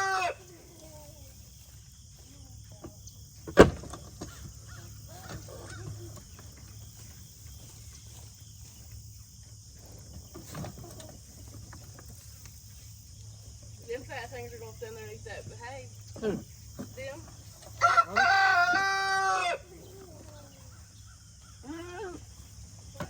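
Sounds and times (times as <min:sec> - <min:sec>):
faint bird calls: 0:04.1 - 0:08.8, 0:17.8 - 0:23.0.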